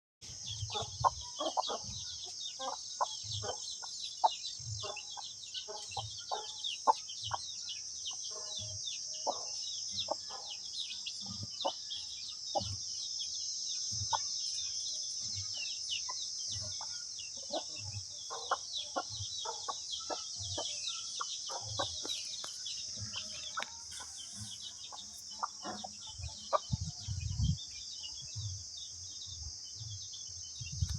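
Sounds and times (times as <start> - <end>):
chickens clucking: 0.4 - 13.2, 13.9 - 27.6
high-pitched hiss: 19.2 - 30.9.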